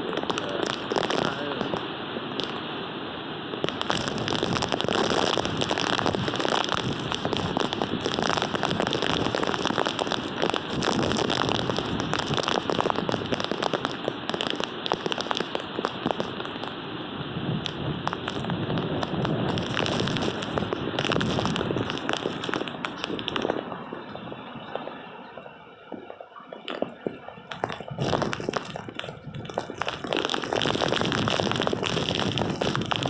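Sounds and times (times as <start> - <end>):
heavy rain pelting hard surface: 0.0 - 33.0.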